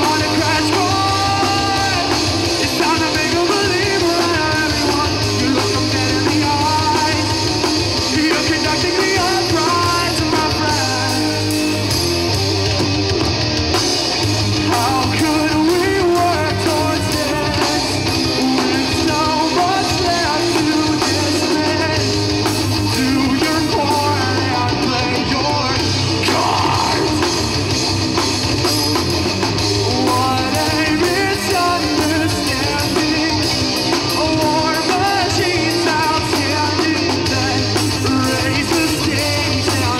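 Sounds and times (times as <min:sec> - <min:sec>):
person singing: 0:00.0 - 0:07.4, 0:14.7 - 0:22.2, 0:22.9 - 0:27.5, 0:29.8 - 0:39.9
live rock band playing: 0:00.0 - 0:39.9.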